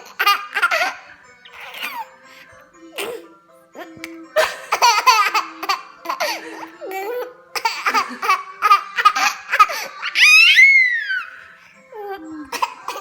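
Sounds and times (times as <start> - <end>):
baby giggling: 0.0 - 2.1, 3.8 - 13.0
baby squealing: 0.2 - 2.1, 9.0 - 13.0.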